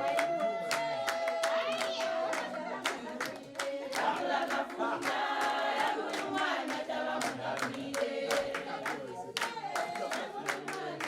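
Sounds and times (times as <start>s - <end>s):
group singing: 0.0s - 11.0s
hand clapping: 0.0s - 11.0s.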